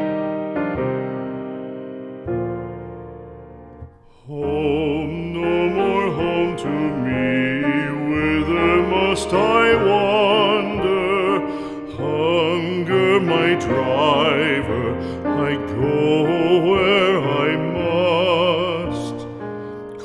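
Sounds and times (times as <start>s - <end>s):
piano accompaniment: 0.0s - 20.0s
classical singing with vibrato: 4.0s - 20.0s.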